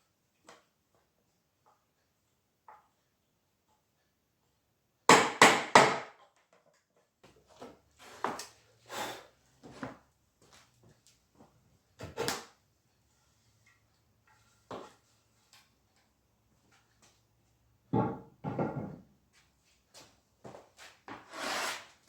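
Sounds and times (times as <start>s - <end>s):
wooden knocks and clatter: 17.9s - 19.1s.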